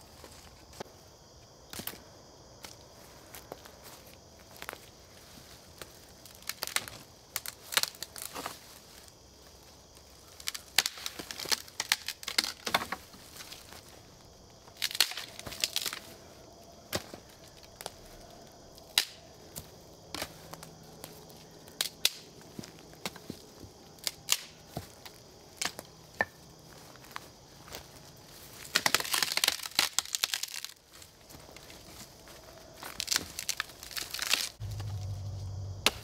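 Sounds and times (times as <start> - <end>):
twigs cracking and snapping: 5.7 - 14.0, 14.6 - 16.2, 16.8 - 36.0.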